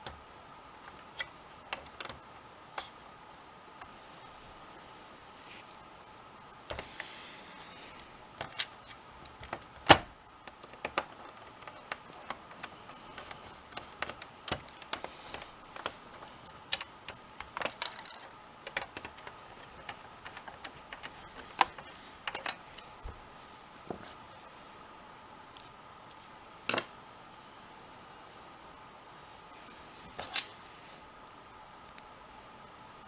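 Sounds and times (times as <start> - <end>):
plastic console parts clicking: 0.8 - 3.0, 6.7 - 7.2, 8.3 - 22.9.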